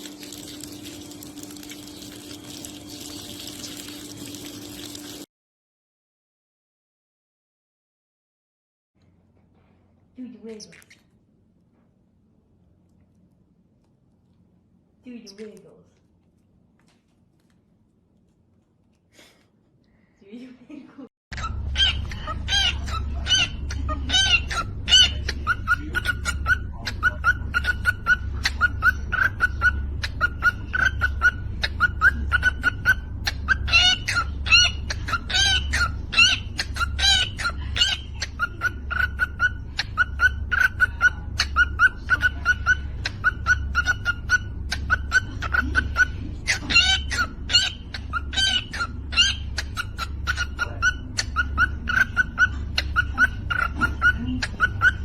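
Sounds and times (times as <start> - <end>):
bird chirping: 21.4 - 55.0.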